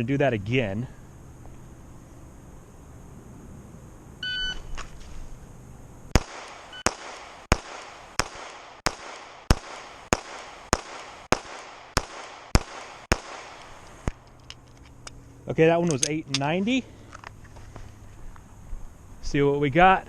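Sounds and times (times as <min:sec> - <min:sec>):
pistol shots: 0:06.1 - 0:14.2.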